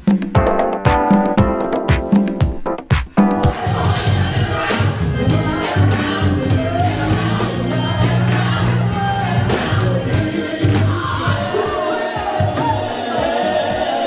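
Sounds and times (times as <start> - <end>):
drums: 0.0 - 14.0
bass: 3.2 - 11.6
person singing: 3.2 - 14.0.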